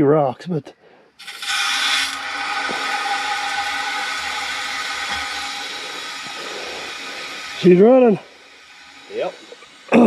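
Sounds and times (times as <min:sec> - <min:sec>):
water rushing through pipe: 0:01.2 - 0:10.0.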